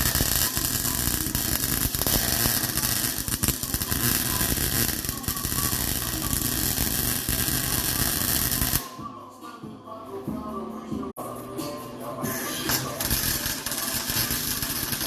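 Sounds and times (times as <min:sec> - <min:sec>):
welding arc crackling and sizzling: 0:00.0 - 0:08.9, 0:12.3 - 0:15.0.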